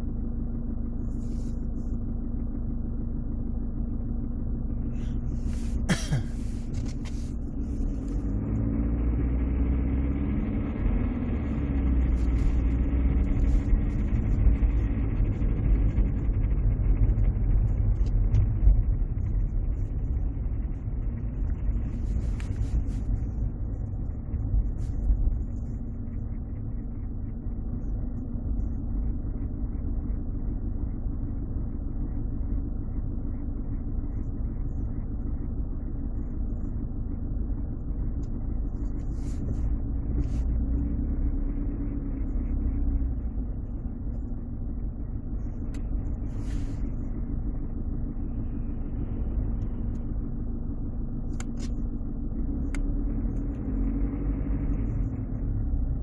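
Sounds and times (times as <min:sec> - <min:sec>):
diesel engine revving: 0:04.9 - 0:17.8, 0:38.0 - 0:51.1, 0:52.2 - 0:56.0.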